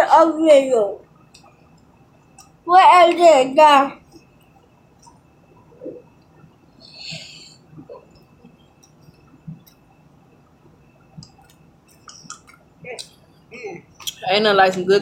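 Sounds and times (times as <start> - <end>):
faint mouth sounds: 11.1 - 14.2.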